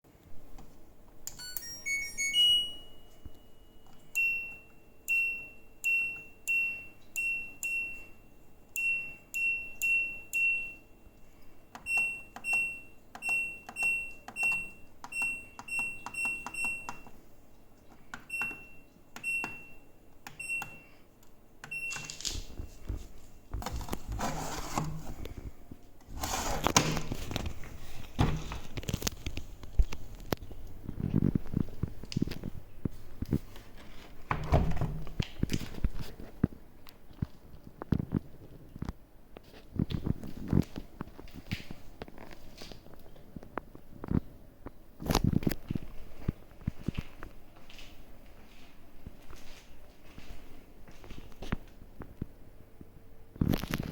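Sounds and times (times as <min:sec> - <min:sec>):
button-press beeps with clicks: 0:01.3 - 0:08.2, 0:08.8 - 0:10.8, 0:11.8 - 0:17.1, 0:18.2 - 0:21.0, 0:21.6 - 0:22.2
power-on jingle: 0:01.4 - 0:03.2.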